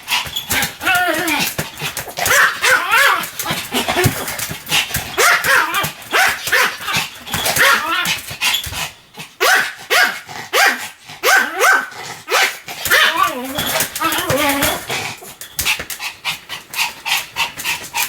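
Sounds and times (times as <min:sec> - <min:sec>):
small dog yapping: 0:02.2 - 0:04.4, 0:05.1 - 0:08.2, 0:09.4 - 0:14.9.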